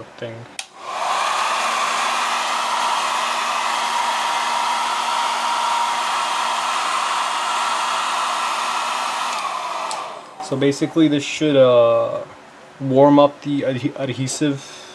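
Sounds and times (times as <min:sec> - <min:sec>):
hair dryer blowing air: 0:00.6 - 0:10.9.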